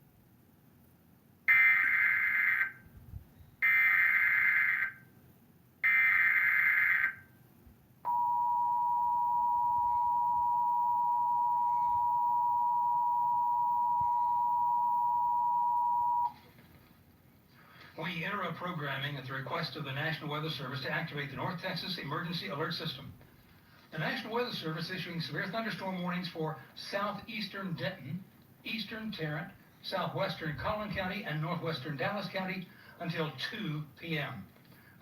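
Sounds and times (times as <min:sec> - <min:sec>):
two-tone attention signal: 0:08.1 - 0:16.3.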